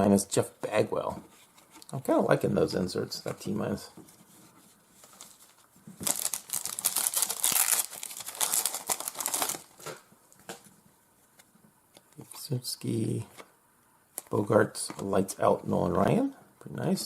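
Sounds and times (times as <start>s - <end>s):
wrapper tearing and crinkling: 6.0s - 9.9s.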